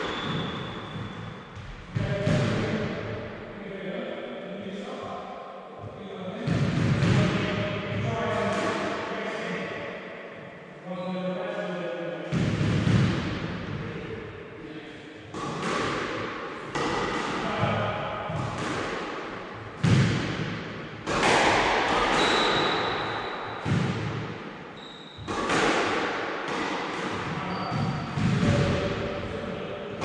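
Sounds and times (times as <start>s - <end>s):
shoe squeaks: 0.0s - 1.4s, 22.1s - 23.0s, 24.8s - 25.4s, 27.4s - 28.2s
squash ball strikes: 6.4s - 9.0s, 12.3s - 13.8s, 15.2s - 24.6s, 25.2s - 29.2s.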